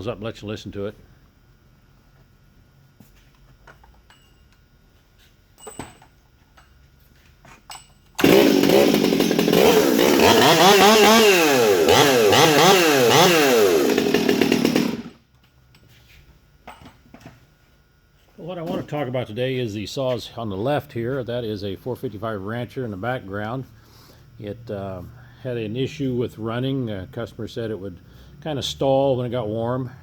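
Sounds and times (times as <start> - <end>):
chainsaw engine revving: 8.2 - 15.2.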